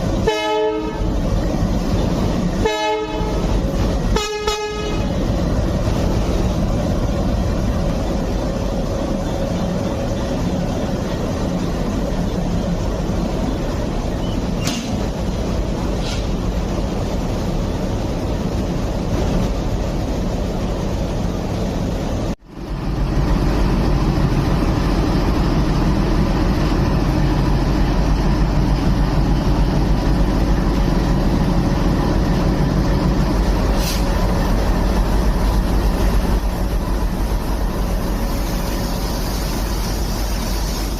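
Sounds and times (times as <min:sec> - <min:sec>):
diesel locomotive rumbling: 0:00.0 - 0:40.9
brief hiss: 0:16.0 - 0:16.4, 0:33.7 - 0:34.2.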